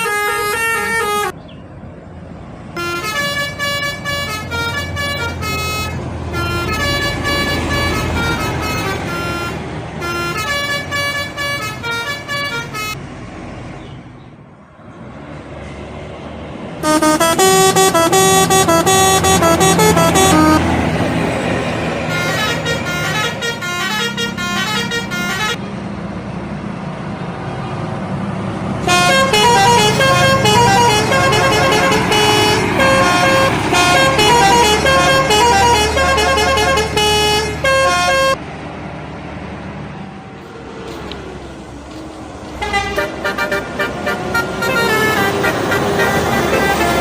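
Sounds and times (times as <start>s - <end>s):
bus horns playing short tunes: 0.0s - 1.3s, 2.8s - 13.0s, 16.8s - 20.8s, 22.0s - 25.7s, 28.8s - 38.4s, 42.6s - 47.0s
bus engine: 0.0s - 47.0s
road noise: 0.0s - 47.0s.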